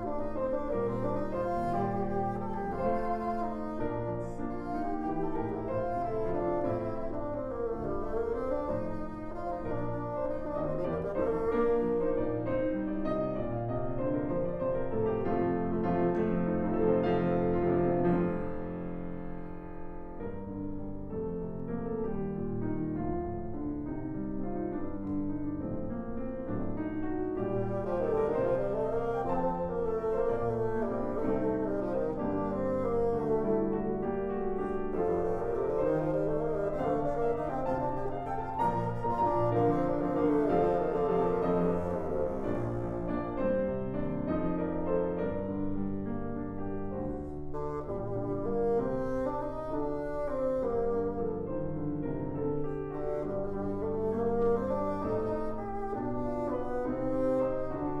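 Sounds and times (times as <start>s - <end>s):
bassoon melody: 0.0s - 21.2s, 26.7s - 58.0s
piano chords: 0.0s - 58.0s
bassoon notes: 27.4s - 43.5s.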